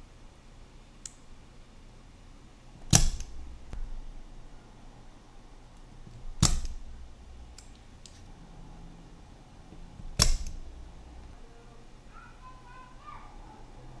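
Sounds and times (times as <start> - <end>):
sharp mechanical snaps: 1.0 - 1.3, 2.8 - 4.0, 5.8 - 8.3, 10.0 - 11.4.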